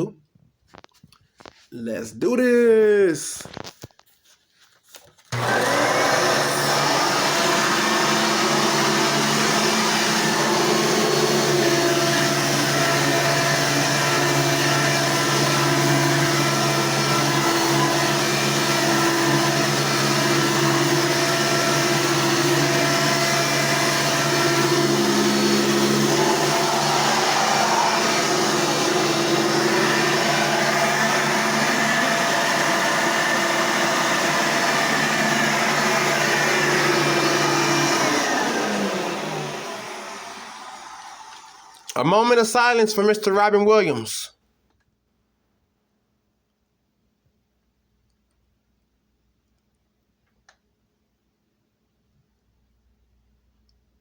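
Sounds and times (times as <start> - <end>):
vacuum cleaner running: 5.3 - 43.6.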